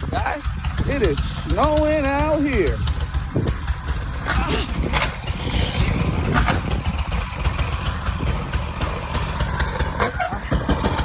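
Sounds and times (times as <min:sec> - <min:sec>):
engine idling with crackles: 0:00.0 - 0:11.0.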